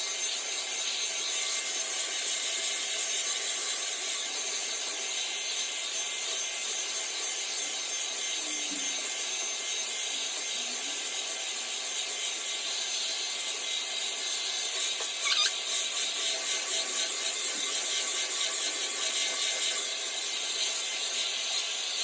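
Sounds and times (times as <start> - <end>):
hot air brush blowing: 0.0 - 22.0
high squeak: 15.0 - 17.1.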